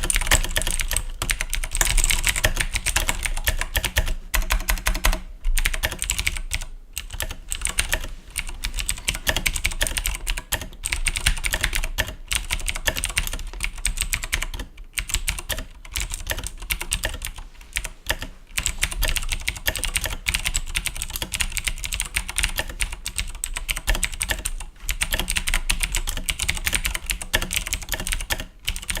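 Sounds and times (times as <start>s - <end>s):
mechanical keyboard typing: 0.0s - 29.0s.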